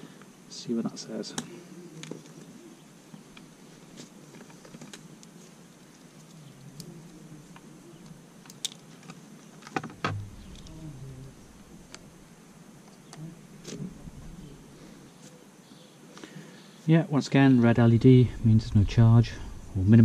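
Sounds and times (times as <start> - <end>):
loud knock and low thump: 10.0 - 12.3.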